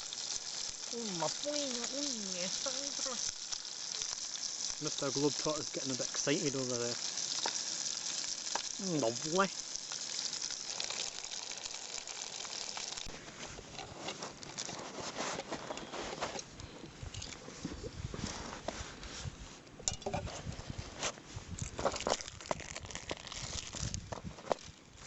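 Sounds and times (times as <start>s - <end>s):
burgers sizzling: 0.0s - 15.7s, 21.9s - 24.8s.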